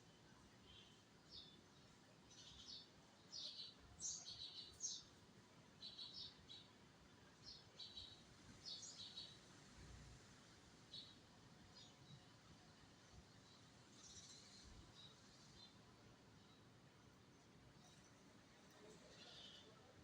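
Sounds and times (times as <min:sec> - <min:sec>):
small birds chirping: 0:00.6 - 0:05.2, 0:07.4 - 0:09.5, 0:13.2 - 0:19.9.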